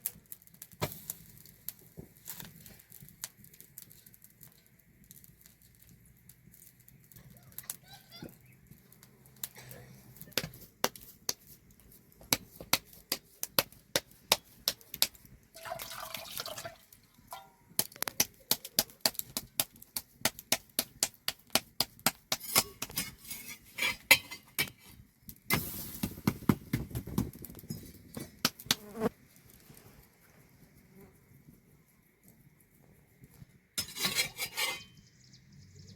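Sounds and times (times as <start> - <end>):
short hiss: 25.5 - 26.1.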